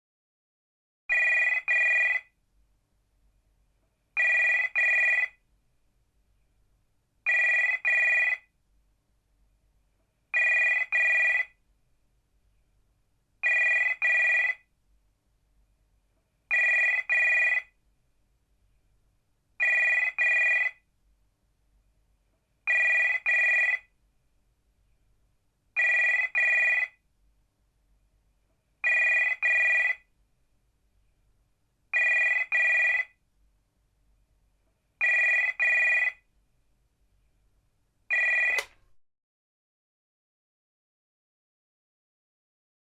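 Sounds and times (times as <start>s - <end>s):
telephone double ring: 38.1s - 39.0s.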